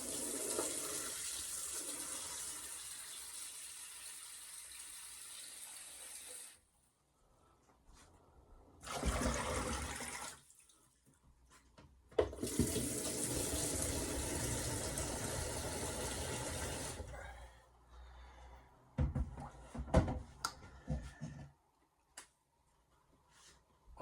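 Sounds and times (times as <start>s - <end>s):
water running from a tap: 0.0s - 6.6s, 12.4s - 17.1s.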